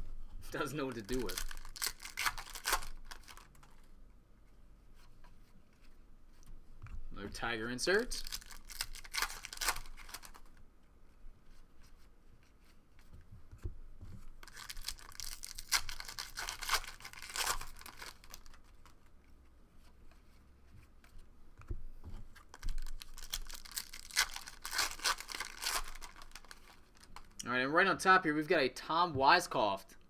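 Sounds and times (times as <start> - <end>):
foil wrapper tearing and crinkling: 0.6 - 3.7, 7.9 - 10.5, 14.4 - 18.7, 22.5 - 27.3
cards being handled: 0.6 - 3.9, 7.9 - 10.6, 13.0 - 19.5, 22.3 - 27.4.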